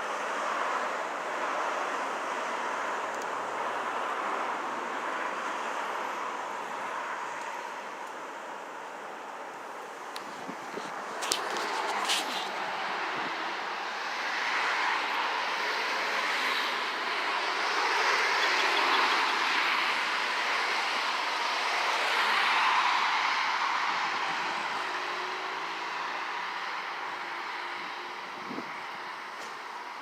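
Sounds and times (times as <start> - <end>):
wind blowing hard: 10.1 - 13.6, 28.2 - 28.8.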